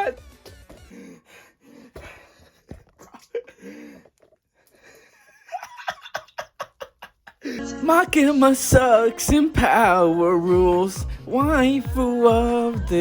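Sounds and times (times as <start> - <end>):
person moaning and gasping: 0.9 - 2.3.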